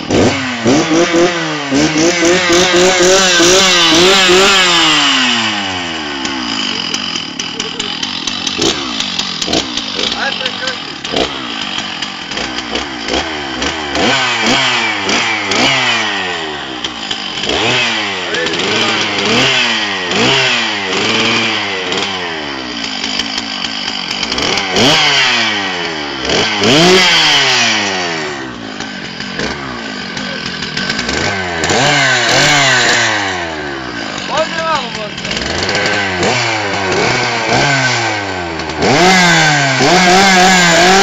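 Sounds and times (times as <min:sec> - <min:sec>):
chainsaw engine revving: 0:00.0 - 0:41.0.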